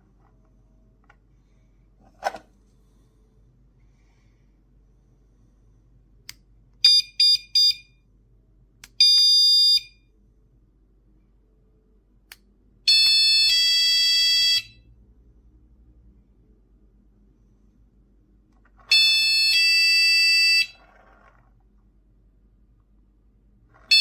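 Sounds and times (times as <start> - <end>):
door alarm beeping: 6.8 - 8.0, 9.0 - 10.0, 12.9 - 14.8, 18.9 - 20.8.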